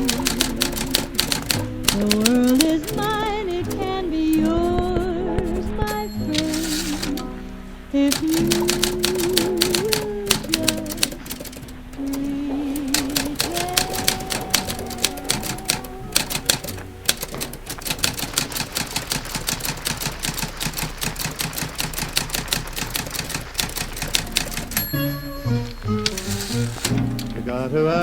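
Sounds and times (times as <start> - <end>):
typewriter keys clacking: 0.0 - 7.2, 8.1 - 25.0, 25.6 - 27.4
song on radio: 0.0 - 17.5, 23.7 - 28.0.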